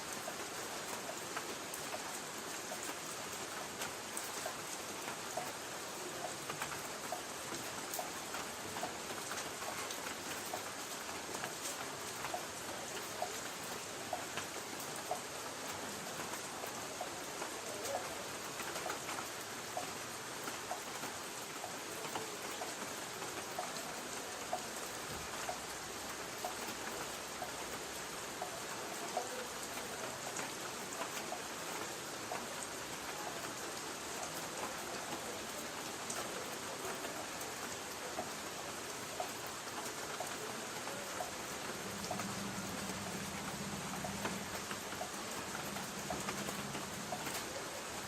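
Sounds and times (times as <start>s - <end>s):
rain on a tin roof: 0.0s - 48.0s
faint low hum: 41.4s - 47.8s.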